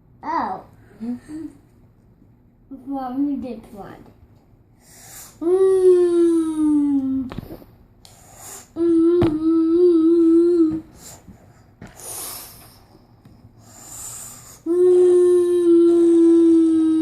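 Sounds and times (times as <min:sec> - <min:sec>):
child humming a steady tone: 0:00.9 - 0:01.6, 0:04.8 - 0:07.3, 0:08.1 - 0:13.0, 0:13.6 - 0:17.0.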